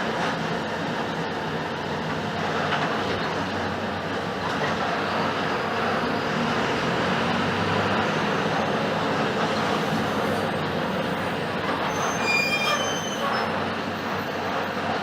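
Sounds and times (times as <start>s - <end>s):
bus diesel engine running: 0.0s - 15.0s
brief high squeal: 9.9s - 14.5s.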